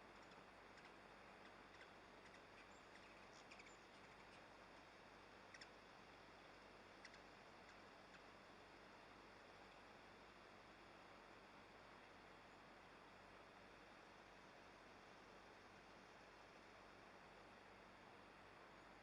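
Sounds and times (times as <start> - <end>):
faint steady hiss: 0.0 - 19.0
faint clicks: 0.1 - 4.4, 5.5 - 5.8.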